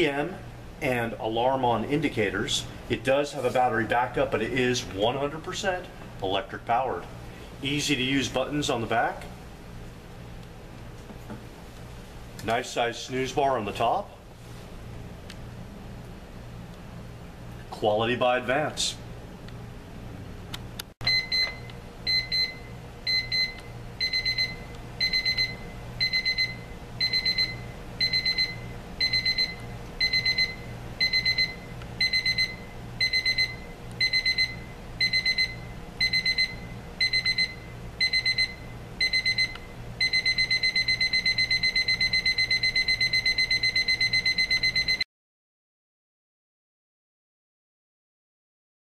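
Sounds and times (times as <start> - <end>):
alarm clock beeping: 21.0 - 45.0.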